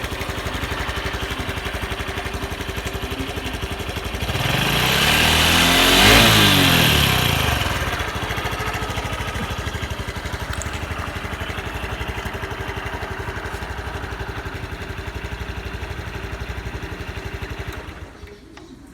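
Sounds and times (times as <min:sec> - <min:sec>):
motorcycle engine idling: 0:00.0 - 0:18.9.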